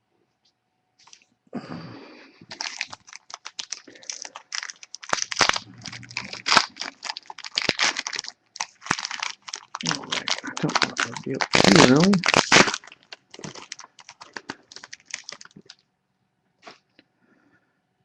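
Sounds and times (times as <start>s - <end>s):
foil wrapper tearing and crinkling: 2.5s - 15.8s.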